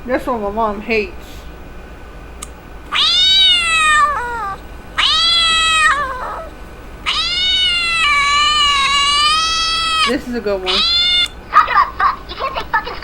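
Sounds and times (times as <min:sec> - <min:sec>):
cat meow ringtone: 0:02.9 - 0:06.5, 0:07.1 - 0:10.1, 0:10.7 - 0:11.3.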